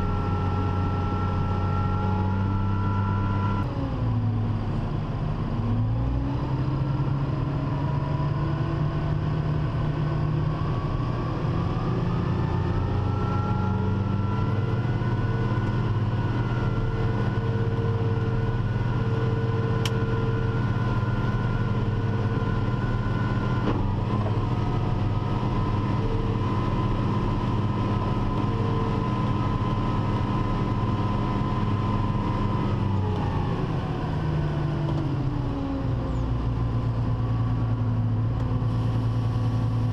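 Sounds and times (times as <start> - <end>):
tractor engine under load: 9.1 - 39.9.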